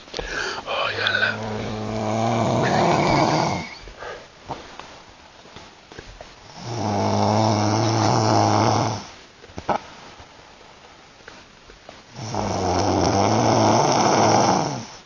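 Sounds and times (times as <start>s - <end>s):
woman snoring: 0.3s - 3.8s, 6.5s - 9.1s, 12.2s - 15.0s.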